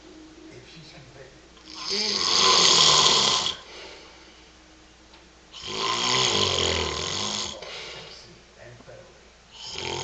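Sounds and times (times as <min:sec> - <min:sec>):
man snoring loudly: 0:01.7 - 0:03.7, 0:05.5 - 0:07.7, 0:09.5 - 0:10.0.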